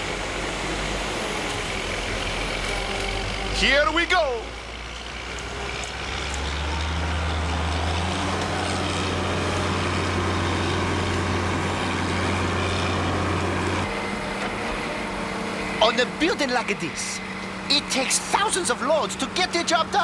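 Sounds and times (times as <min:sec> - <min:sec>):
crane engine humming under load: 0:00.0 - 0:20.0.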